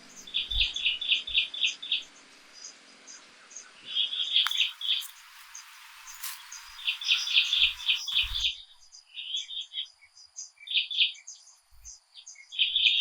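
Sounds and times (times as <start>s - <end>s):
birds chirping: 4.2s - 8.5s.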